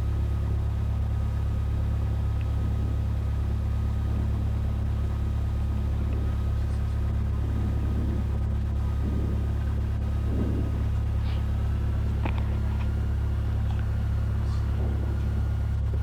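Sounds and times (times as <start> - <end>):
propeller plane engine droning: 0.0 - 16.0.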